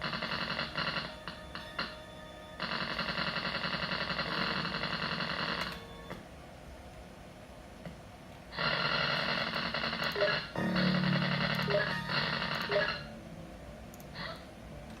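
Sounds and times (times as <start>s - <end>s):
glitchy electronic buzz: 0.0s - 5.8s, 8.6s - 13.2s.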